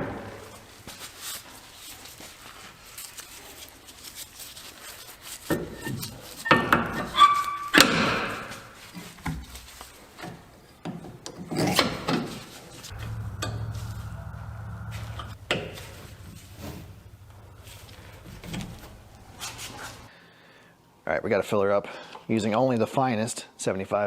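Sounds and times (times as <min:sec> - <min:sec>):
steady low hum: 0:12.9 - 0:20.1.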